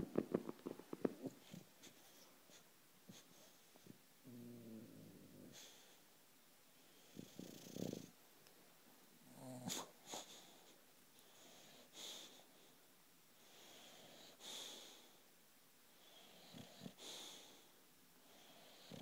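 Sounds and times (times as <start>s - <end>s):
dog snoring: 4.2s - 6.0s, 7.0s - 8.2s, 16.0s - 17.7s, 18.3s - 19.0s
dog hissing breaths: 9.7s - 12.8s, 13.4s - 15.2s, 16.0s - 18.8s.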